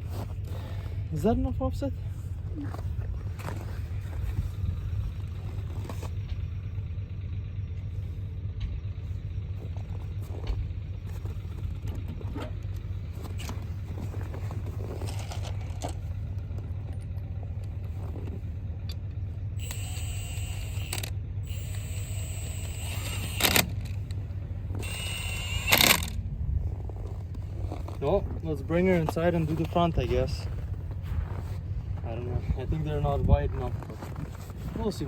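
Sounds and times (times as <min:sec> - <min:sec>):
vehicle engine idling: 0:00.0 - 0:35.0
metal clinks and scrapes: 0:13.2 - 0:16.2
high-pitched whine: 0:19.6 - 0:24.0, 0:24.7 - 0:30.6.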